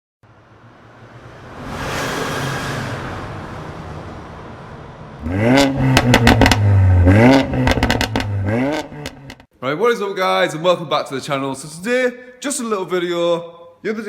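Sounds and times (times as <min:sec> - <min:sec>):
car whooshing past: 0:00.3 - 0:06.6
car engine revving: 0:00.4 - 0:09.4
exhaust crackles: 0:04.5 - 0:09.5.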